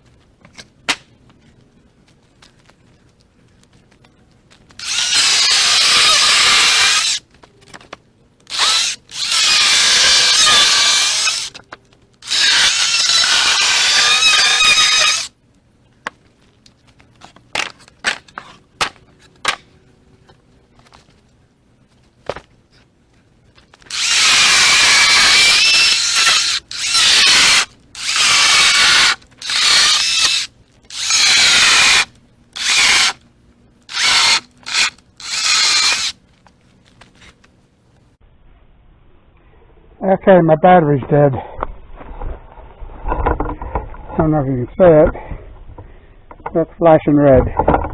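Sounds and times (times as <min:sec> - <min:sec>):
chainsaw cutting wood: 0:04.8 - 0:07.2, 0:08.5 - 0:11.6, 0:12.2 - 0:15.3, 0:23.9 - 0:33.2, 0:33.9 - 0:36.2.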